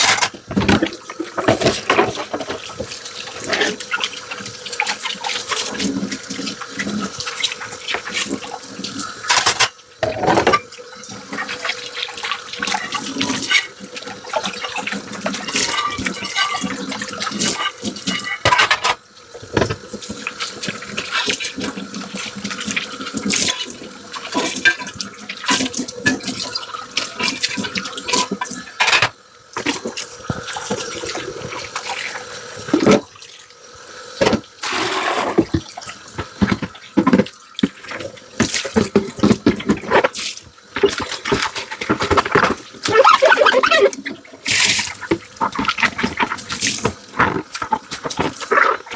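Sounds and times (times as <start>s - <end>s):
dishes clinking: 0.0s - 0.8s, 9.2s - 10.7s, 15.5s - 16.8s, 17.6s - 19.0s, 28.1s - 29.2s
tap water running into sink: 0.0s - 48.9s.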